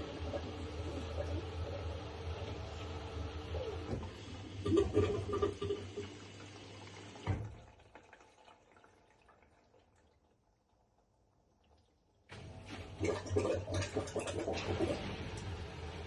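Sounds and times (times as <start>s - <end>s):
washing machine motor hum: 0.0s - 7.9s, 12.3s - 16.0s
water sloshing in washing machine: 0.0s - 16.0s
washing machine clunk: 7.2s - 7.6s.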